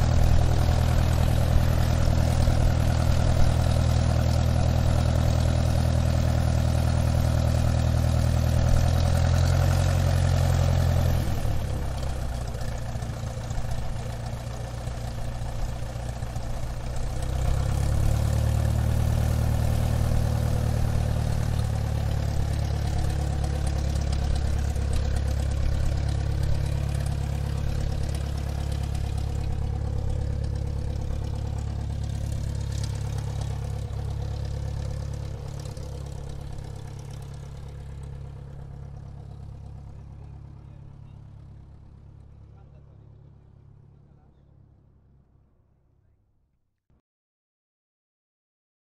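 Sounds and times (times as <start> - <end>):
airplane engine droning: 0.0 - 9.7.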